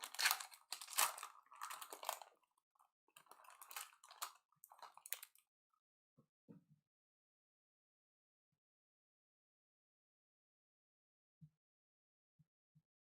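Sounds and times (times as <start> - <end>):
cards being handled: 0.0 - 2.2
wrapper crinkling and tearing: 0.0 - 2.3, 3.2 - 5.4.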